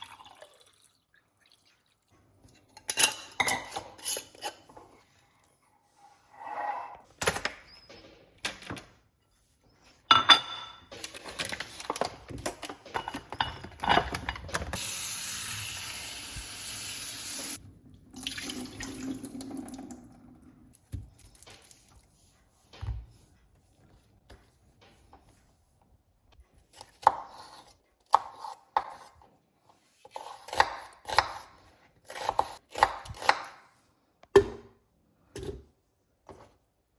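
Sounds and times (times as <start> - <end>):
dishes and utensils clattering: 10.1 - 14.8.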